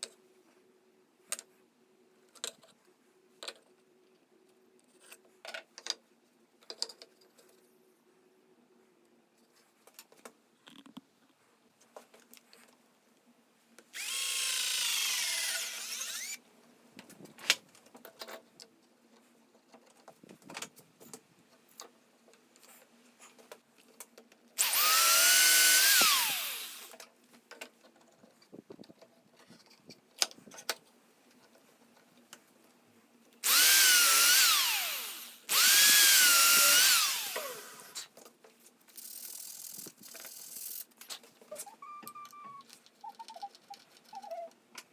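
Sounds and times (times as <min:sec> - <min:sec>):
power drill running: 0:14.0 - 0:16.4, 0:24.6 - 0:27.0, 0:33.4 - 0:38.1.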